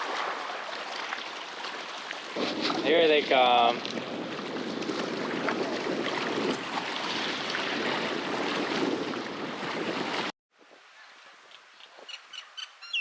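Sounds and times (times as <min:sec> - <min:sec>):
wind on microphone: 0:02.4 - 0:10.8.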